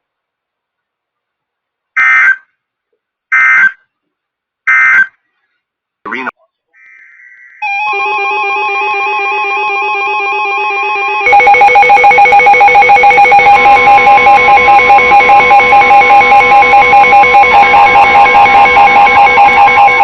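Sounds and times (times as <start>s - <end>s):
buzzy alarm warbling: 7.6s - 20.0s
rapidly pulsing alarm: 7.6s - 20.0s
steady attention tone: 7.6s - 20.0s.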